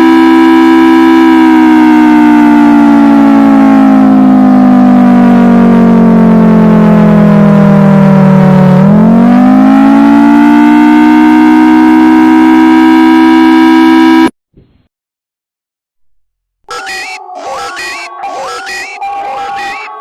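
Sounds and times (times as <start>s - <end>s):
civil defense siren wailing: 0.0s - 14.3s, 16.7s - 20.0s.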